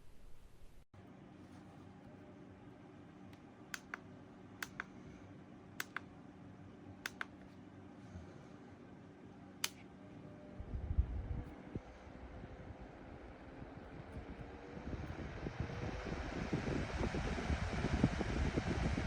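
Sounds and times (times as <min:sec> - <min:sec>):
small fan humming: 0:00.0 - 0:19.0
sharp clicks: 0:03.8 - 0:04.0, 0:04.6 - 0:04.9, 0:05.8 - 0:06.1, 0:07.0 - 0:07.4.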